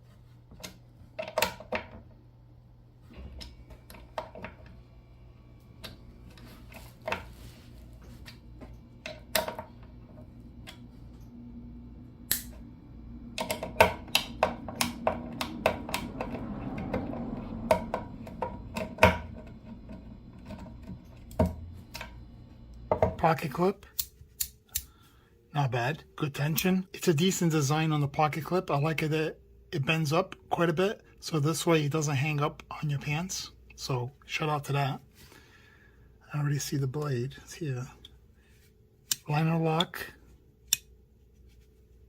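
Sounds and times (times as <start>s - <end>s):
multitool clicking and snapping: 12.3s - 12.6s, 23.8s - 24.9s.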